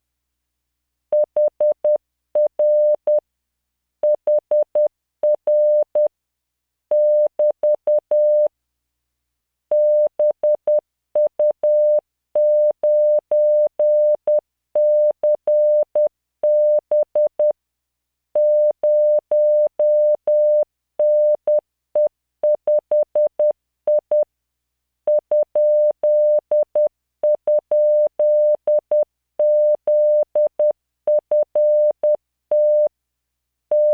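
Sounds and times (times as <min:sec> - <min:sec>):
morse code beeps: 0:31.3 - 0:32.9.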